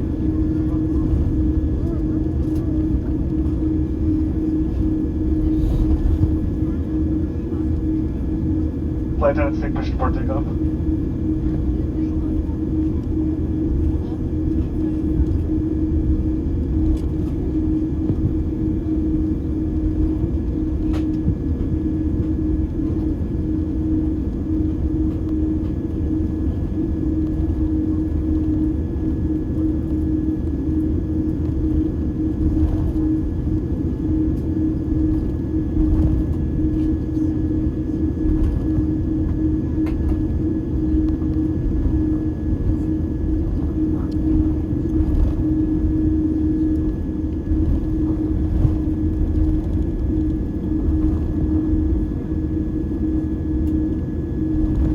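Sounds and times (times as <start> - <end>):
jet airliner taxiing rumble: 0.0 - 54.9.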